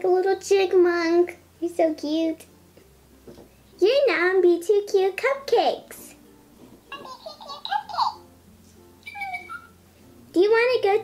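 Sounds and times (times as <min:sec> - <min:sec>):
high-pitched toy voice: 0:09.0 - 0:09.7.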